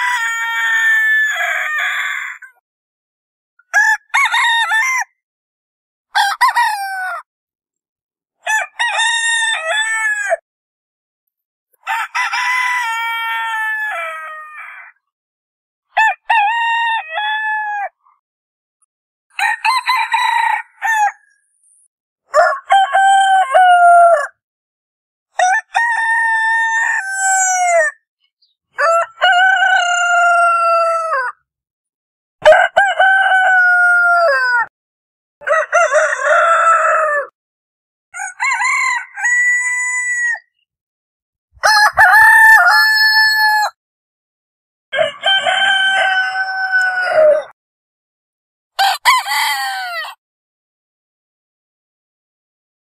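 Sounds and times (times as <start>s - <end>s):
roosters crowing: 0.0s - 2.4s, 6.2s - 7.2s, 8.5s - 10.4s, 11.8s - 14.6s, 19.4s - 21.3s, 22.3s - 24.3s, 25.4s - 27.9s, 28.8s - 31.4s, 32.4s - 34.7s, 35.4s - 37.3s, 38.2s - 40.5s, 41.6s - 43.8s, 44.9s - 47.6s, 48.8s - 50.2s.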